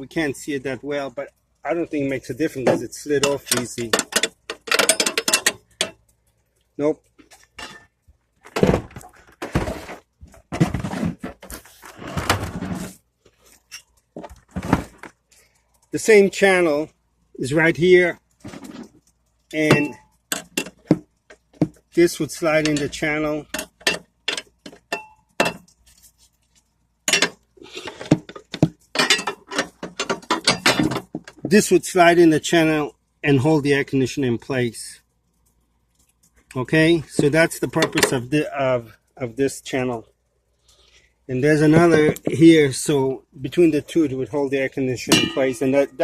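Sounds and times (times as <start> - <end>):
air conditioner scraping and knocking: 8.5 - 13.0, 14.2 - 15.1, 18.4 - 25.6, 27.1 - 31.6, 41.6 - 42.4
clicking and scraping knocks: 27.1 - 31.5.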